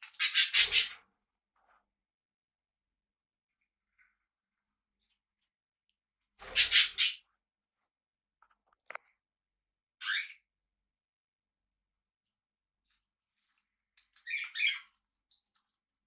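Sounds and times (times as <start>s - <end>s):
parrot squawking: 6.5s - 7.2s.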